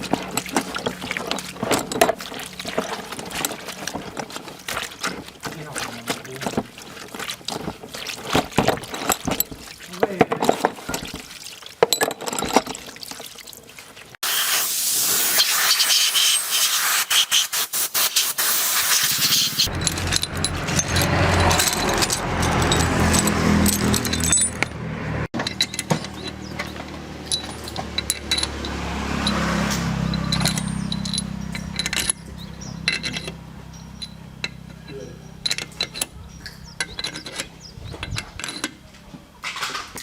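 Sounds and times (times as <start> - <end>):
loud hiss: 14.2 - 19.6
tractor engine running: 18.8 - 39.4.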